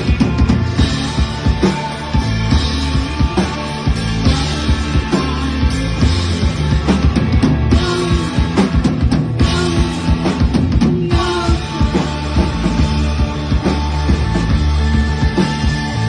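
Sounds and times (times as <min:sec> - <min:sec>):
loud rock music: 0:00.0 - 0:16.0.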